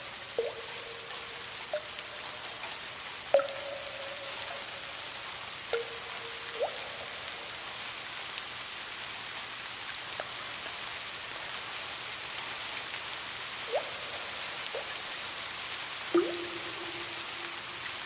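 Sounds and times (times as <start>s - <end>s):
water drops plinking: 0.0s - 2.6s, 3.3s - 7.5s, 13.7s - 15.0s, 16.1s - 18.0s
soft rain hissing: 0.0s - 18.0s.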